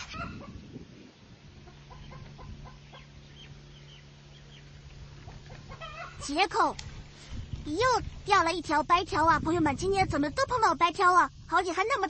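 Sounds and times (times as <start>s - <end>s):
chickens clucking: 0.0s - 0.7s, 1.6s - 6.4s
low steady hum: 0.0s - 12.0s.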